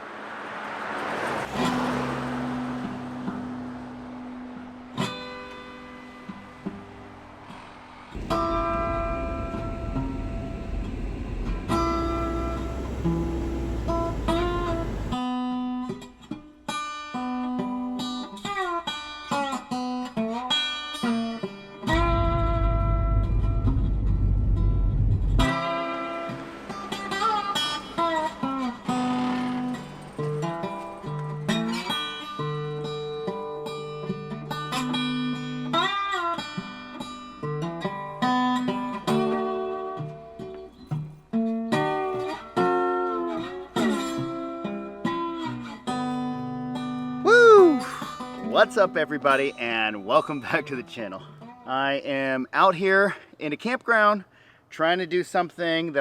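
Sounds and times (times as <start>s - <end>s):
low rumble: 8.2s - 15.2s, 22.0s - 25.5s.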